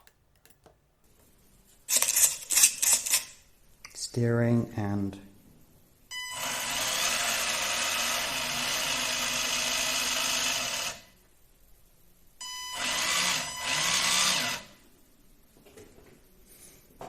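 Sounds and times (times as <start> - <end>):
toy car electric motor whining: 6.3 - 11.0, 12.7 - 14.8.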